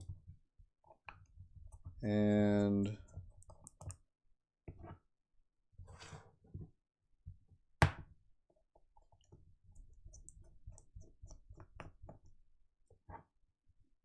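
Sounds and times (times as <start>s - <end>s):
small clicks and taps: 3.0s - 4.0s.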